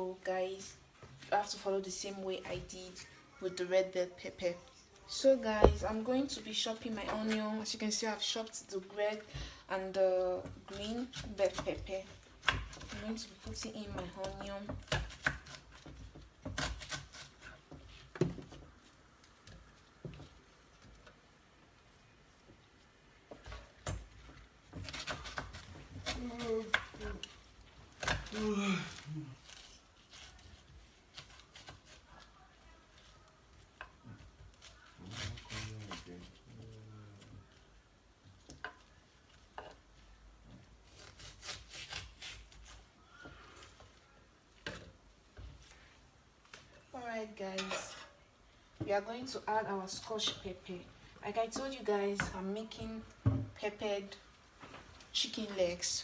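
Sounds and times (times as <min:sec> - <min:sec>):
onion knocking in container: 0:05.6 - 0:05.9.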